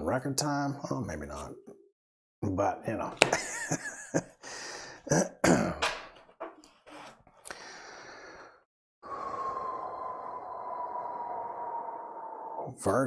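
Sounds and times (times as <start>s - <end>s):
man coughing: 5.1s - 6.1s.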